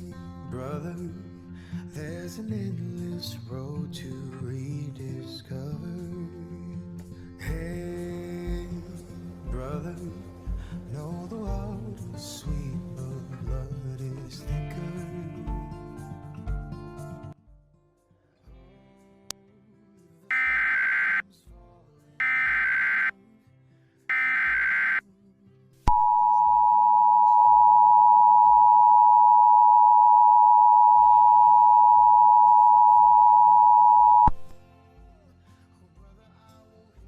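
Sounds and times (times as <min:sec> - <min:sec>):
screeching digital data tone: 0:20.3 - 0:21.2, 0:22.2 - 0:23.1, 0:24.1 - 0:25.0
two-tone attention signal: 0:20.3 - 0:21.2, 0:22.2 - 0:23.1, 0:24.1 - 0:25.0, 0:25.9 - 0:34.4.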